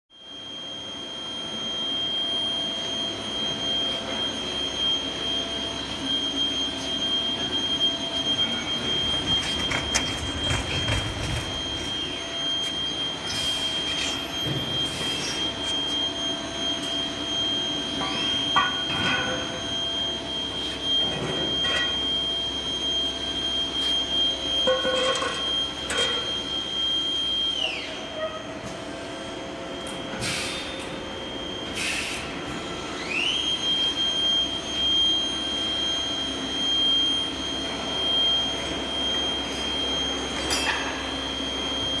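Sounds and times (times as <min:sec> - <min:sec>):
grinder high whine: 0:01.2 - 0:28.2.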